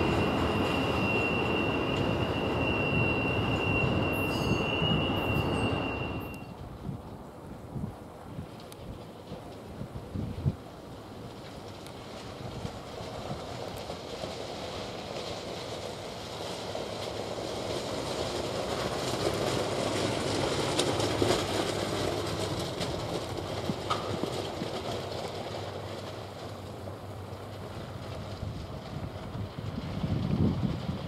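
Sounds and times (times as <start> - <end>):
train wheel squeal: 0.0 - 6.6
freight train wheels on rails: 0.0 - 31.0.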